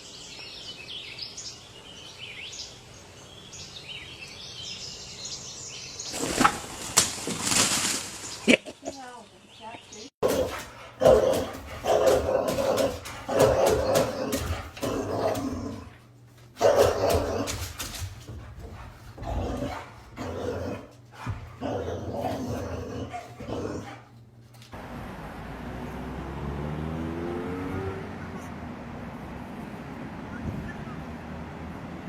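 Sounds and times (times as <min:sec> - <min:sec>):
dog barking and growling: 0:10.2 - 0:24.2.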